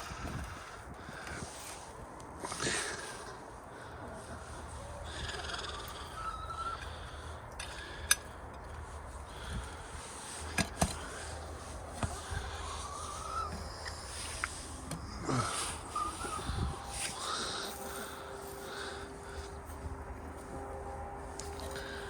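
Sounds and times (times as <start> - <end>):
wind rumble on microphone: 0.0 - 2.4, 8.8 - 10.2, 11.5 - 22.0
poultry rising call: 4.2 - 8.1, 10.3 - 22.0.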